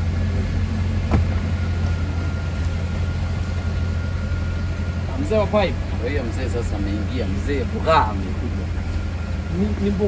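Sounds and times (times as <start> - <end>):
engine idling: 0.0 - 10.0.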